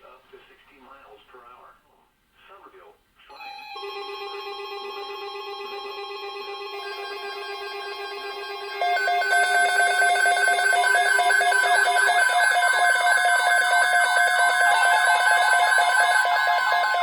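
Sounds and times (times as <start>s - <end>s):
steady alert tones: 3.9s - 17.0s
rapid high beeping: 6.6s - 17.0s
warbling siren-like sweep: 6.7s - 17.0s.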